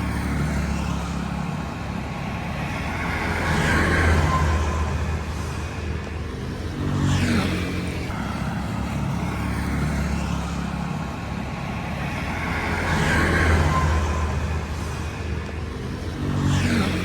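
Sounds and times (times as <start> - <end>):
vehicles passing close by: 0.0 - 17.0.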